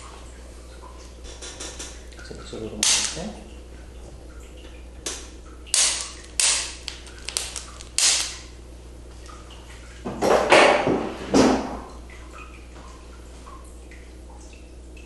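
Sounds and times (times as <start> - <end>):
neck joints cracking: 5.0 - 8.5.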